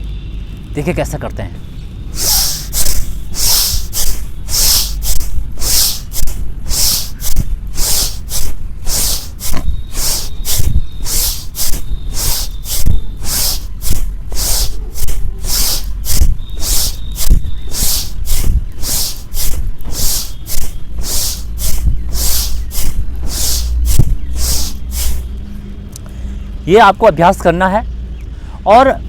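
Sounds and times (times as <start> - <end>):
person breathing forcefully through nose: 2.1 - 25.3.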